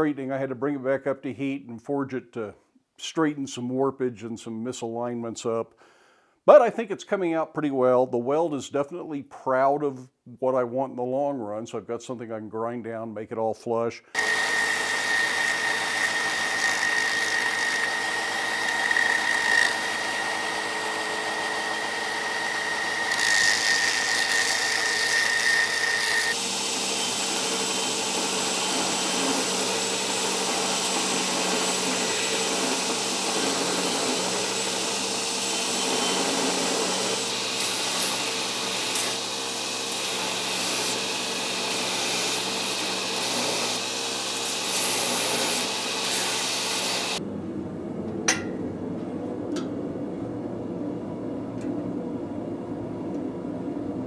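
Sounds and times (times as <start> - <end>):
electric grinder whining: 14.2 - 47.2.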